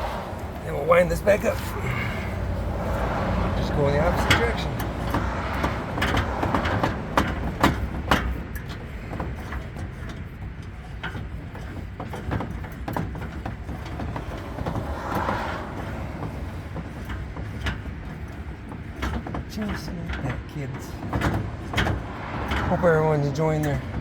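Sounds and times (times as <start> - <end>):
steady low rumble: 0.0 - 11.6.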